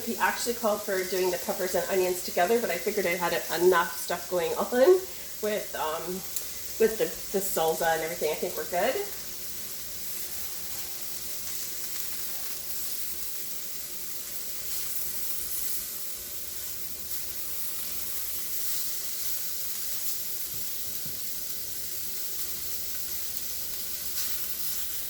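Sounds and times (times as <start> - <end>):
food sizzling in a frying pan: 0.0 - 25.0.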